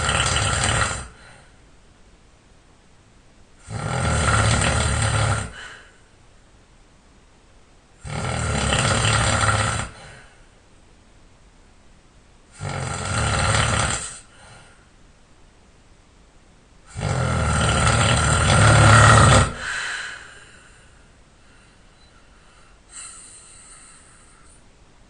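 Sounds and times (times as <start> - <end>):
person snoring: 0.0 - 1.4, 3.6 - 6.0, 8.0 - 10.3, 12.5 - 14.5, 16.9 - 20.6, 22.9 - 24.6
faint breath: 1.0 - 1.7, 5.4 - 6.2, 9.9 - 10.6, 14.0 - 14.9, 19.4 - 24.7.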